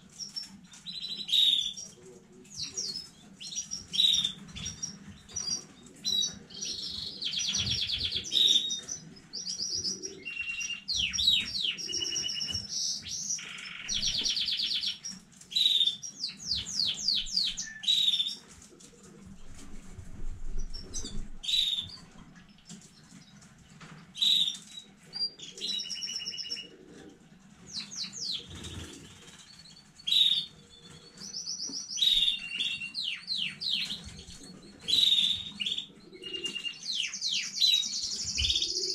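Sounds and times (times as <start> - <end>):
canary singing trills: 0.0 - 1.9, 2.6 - 18.4, 20.6 - 23.4, 24.0 - 26.8, 27.6 - 38.9.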